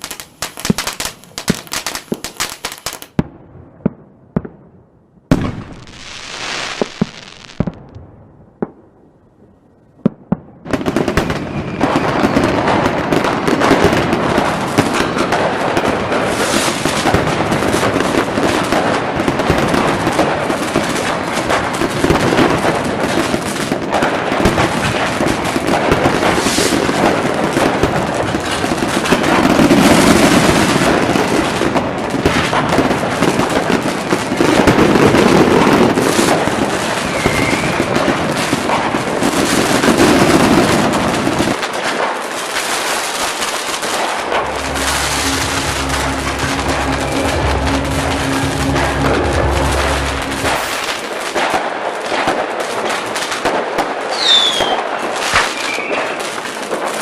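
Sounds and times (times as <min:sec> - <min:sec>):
firework bangs: 0:00.0 - 0:04.6, 0:05.3 - 0:09.1, 0:10.0 - 0:57.0
firework whoosh: 0:43.3 - 0:51.7.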